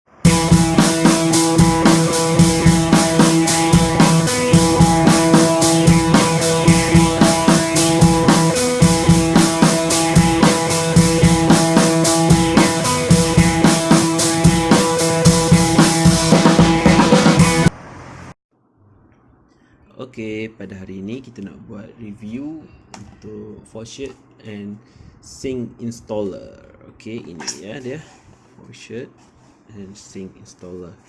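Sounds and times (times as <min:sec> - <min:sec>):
band music with drums and guitar: 0:00.1 - 0:17.7.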